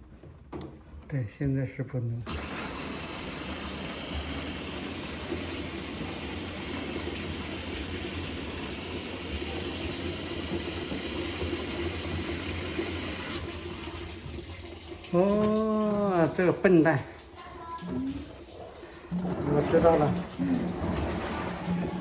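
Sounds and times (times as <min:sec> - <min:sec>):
water filling washing machine: 0:01.1 - 0:22.0.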